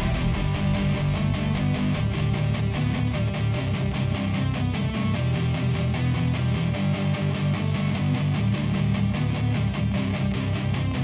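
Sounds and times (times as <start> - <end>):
distorted electric guitar rock music: 0.0 - 11.0.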